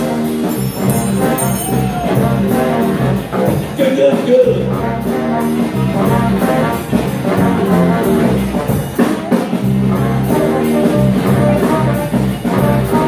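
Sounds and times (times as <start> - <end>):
bass and drums: 0.0 - 13.0
horn lead: 0.0 - 13.0.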